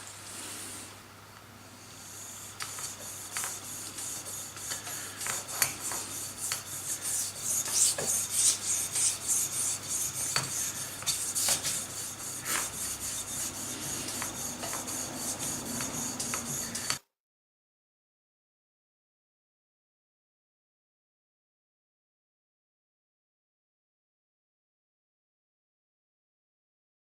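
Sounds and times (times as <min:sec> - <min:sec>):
knife rasping on sharpening stone: 0:02.0 - 0:17.0.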